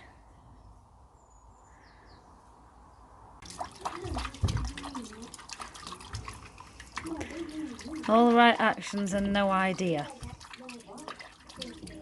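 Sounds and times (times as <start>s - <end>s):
water splashing in a tub: 3.4s - 12.0s.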